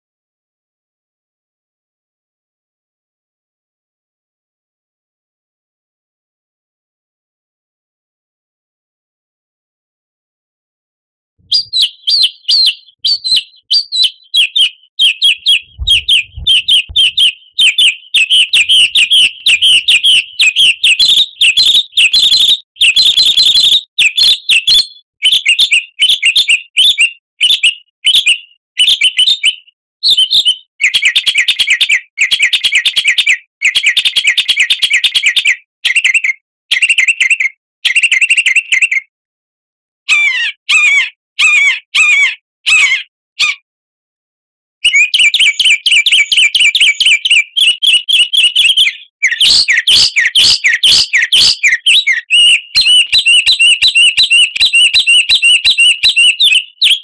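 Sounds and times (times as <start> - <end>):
songbird singing: 11.4 - 32.6, 44.8 - 57.0.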